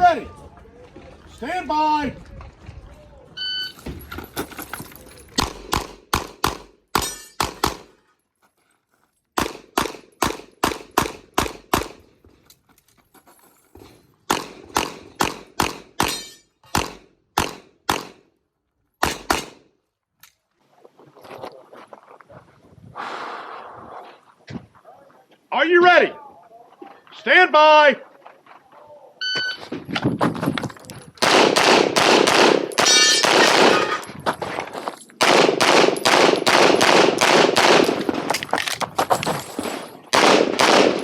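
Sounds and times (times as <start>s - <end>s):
handgun shots: 5.4s - 7.9s, 14.3s - 18.2s, 19.0s - 19.6s, 31.2s - 34.0s, 35.2s - 38.1s, 40.1s - 41.0s.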